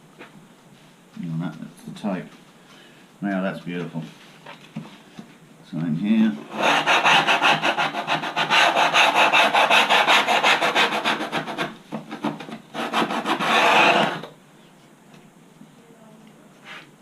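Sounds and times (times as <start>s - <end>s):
sandpaper rubbing on foam: 6.5s - 14.2s.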